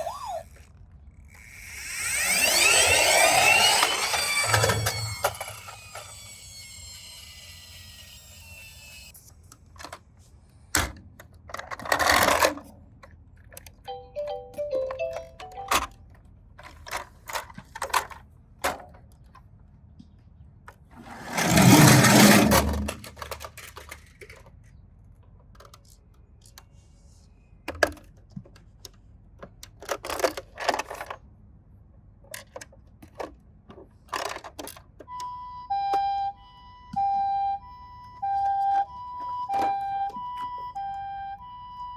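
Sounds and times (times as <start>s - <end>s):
toy cars clattering: 0.0s - 9.1s, 11.4s - 15.9s, 16.6s - 18.8s, 21.0s - 24.7s, 29.4s - 31.3s, 32.3s - 35.0s
toy cars rolling down slide: 0.0s - 9.2s, 11.5s - 12.7s, 20.9s - 24.5s, 29.7s - 31.2s, 34.0s - 34.8s
two-tone ambulance siren: 2.1s - 9.1s, 35.1s - 41.9s.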